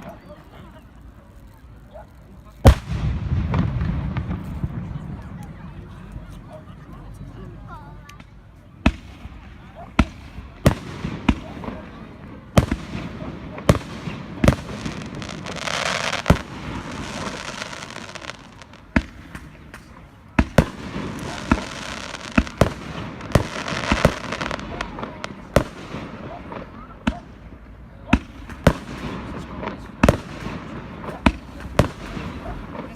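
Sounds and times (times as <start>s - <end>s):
fireworks hissing: 10.1s - 26.6s.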